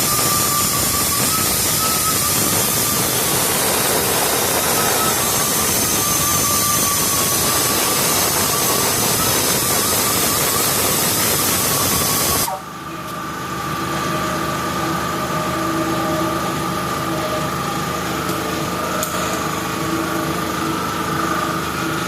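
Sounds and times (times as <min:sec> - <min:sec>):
pneumatic air hiss: 0:00.0 - 0:12.7
mechanical whine: 0:00.0 - 0:22.0.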